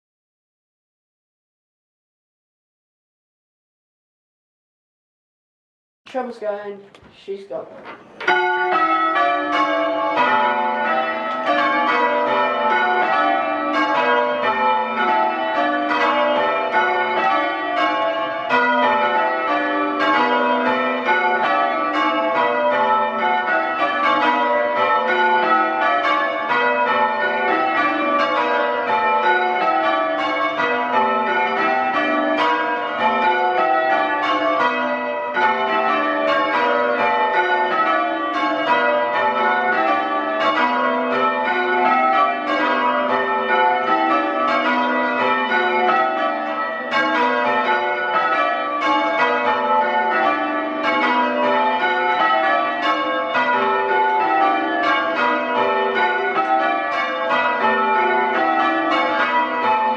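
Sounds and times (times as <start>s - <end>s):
church bells change ringing: 7.5s - 59.9s.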